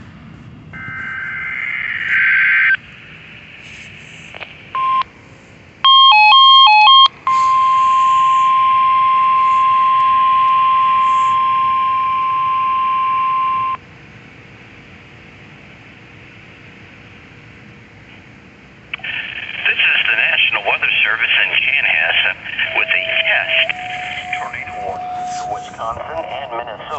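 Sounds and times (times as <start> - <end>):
steady warning tone: 0.7 - 5.2, 5.8 - 13.9, 20.4 - 26.9
rapid beeping warble: 0.8 - 2.9, 22.5 - 26.9
short beep: 5.9 - 13.8, 22.7 - 26.3.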